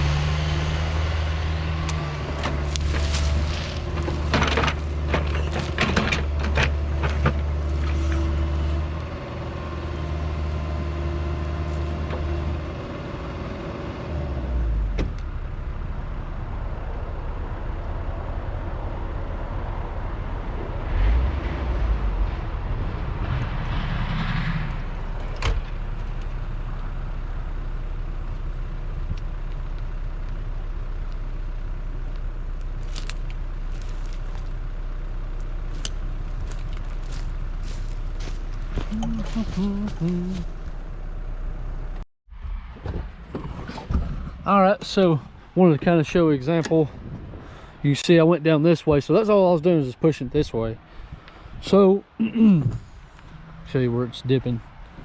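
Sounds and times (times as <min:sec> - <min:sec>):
diesel engine running: 0:00.0 - 0:55.0
metal clanks and knocks: 0:01.9 - 0:08.5.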